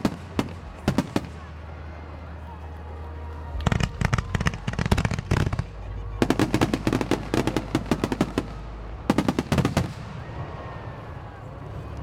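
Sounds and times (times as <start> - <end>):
fireworks crackling pops: 3.6 - 10.3.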